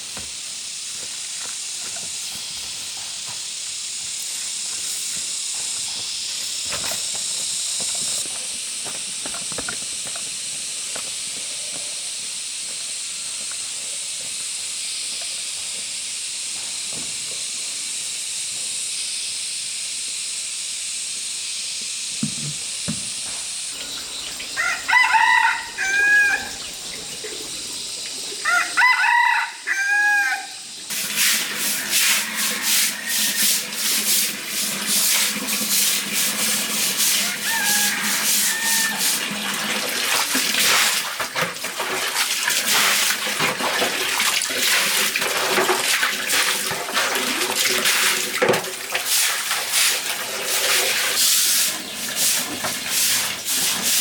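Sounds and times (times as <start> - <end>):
rooster crowing: 23.8 - 27.6, 28.3 - 30.8, 31.6 - 33.6, 37.2 - 39.3.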